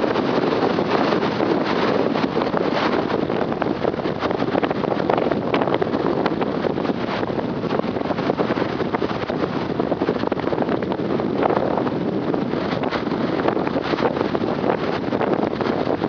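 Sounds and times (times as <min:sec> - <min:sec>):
strong wind on microphone: 0:00.0 - 0:16.0.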